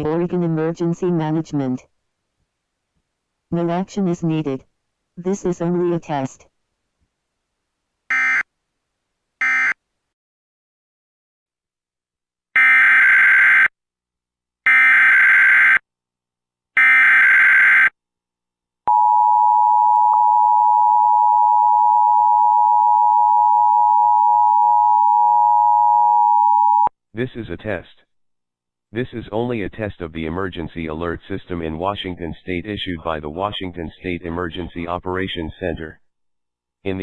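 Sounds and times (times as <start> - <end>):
buzzy data tone bursts: 18.9 - 26.9
steady two-tone attention signal: 18.9 - 26.9.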